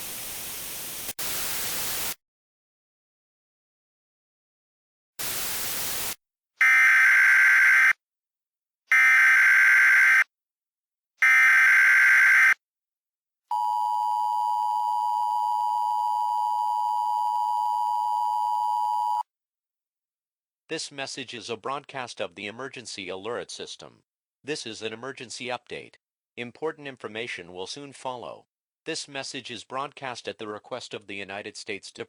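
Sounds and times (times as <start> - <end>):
static: 0.0 - 2.2, 5.2 - 6.2.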